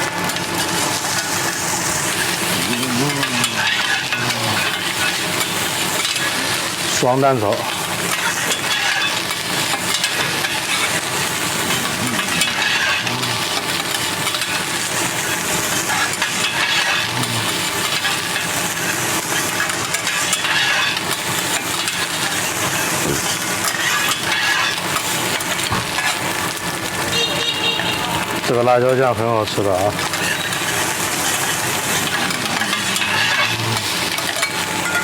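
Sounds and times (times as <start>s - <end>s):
rice sizzling on griddle: 0.0s - 35.0s
metal spatulas scraping: 8.2s - 13.8s, 30.1s - 35.0s.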